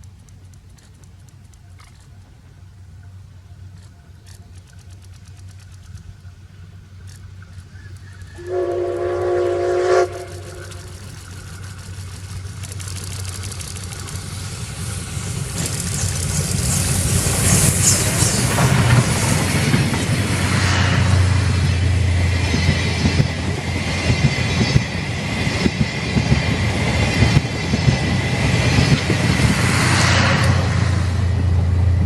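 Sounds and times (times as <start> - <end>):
train rumble and wheel noise: 0.0 - 32.0
steam locomotive whistle: 8.2 - 11.1.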